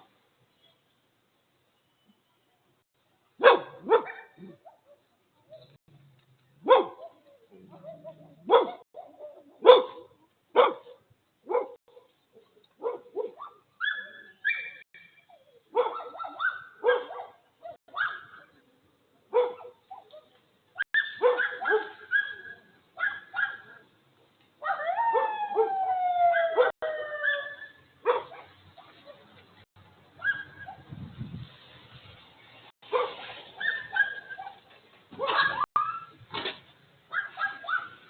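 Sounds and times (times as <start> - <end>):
dog howling: 24.7 - 27.7.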